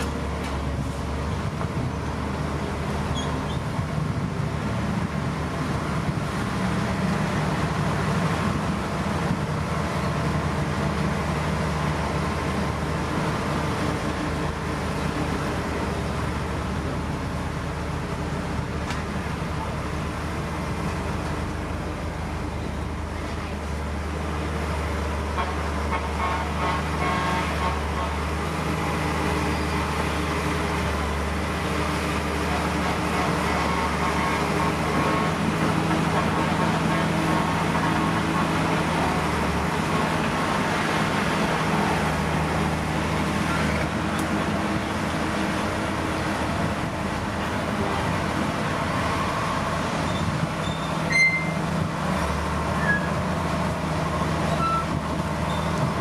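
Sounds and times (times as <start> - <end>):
heavy diesel machinery running: 0.0 - 56.0
short high beep: 50.7 - 51.6.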